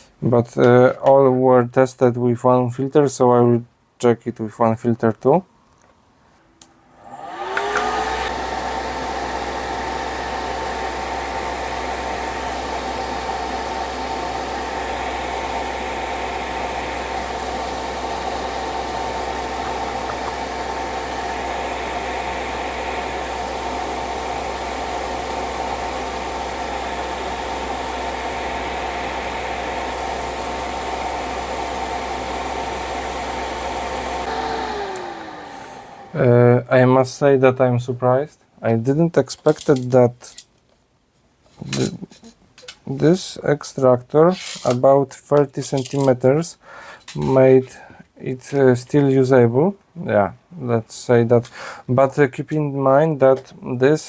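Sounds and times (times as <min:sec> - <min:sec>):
fan humming: 0:06.7 - 0:37.2.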